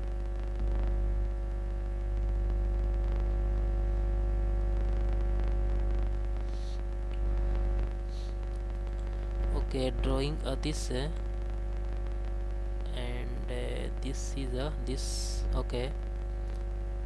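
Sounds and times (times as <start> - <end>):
electrical mains hum: 0.0 - 17.0
faint hiss: 5.0 - 16.7.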